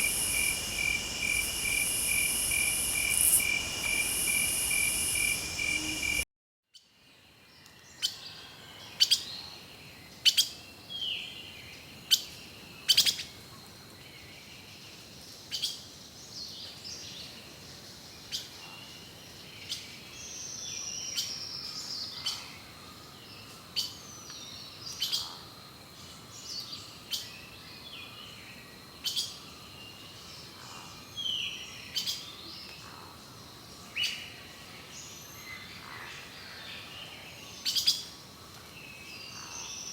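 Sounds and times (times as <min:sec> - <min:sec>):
crickets chirring: 0:00.0 - 0:06.2
faint background hiss: 0:00.0 - 0:06.2
songbirds calling and singing: 0:00.0 - 0:06.2, 0:07.5 - 0:39.9.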